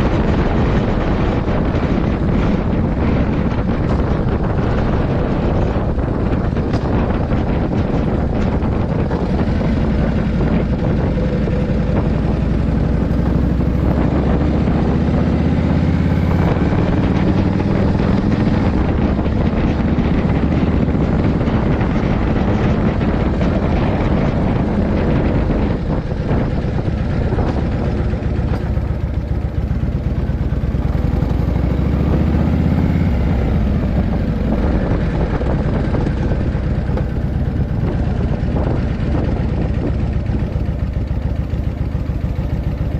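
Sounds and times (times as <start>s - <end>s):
motorcycle engine accelerating: 0.0s - 42.9s.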